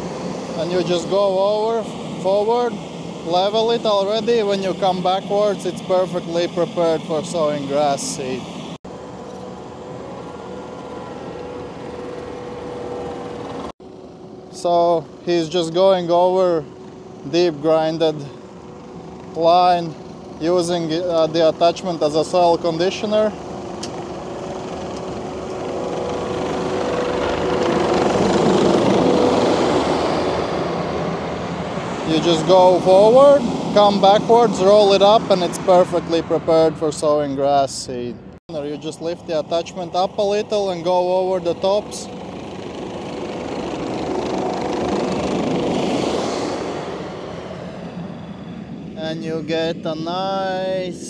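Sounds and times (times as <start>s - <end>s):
grinder attachment hum: 0.0s - 35.7s
track loader engine: 0.0s - 51.0s
loader engine under load: 19.2s - 35.8s.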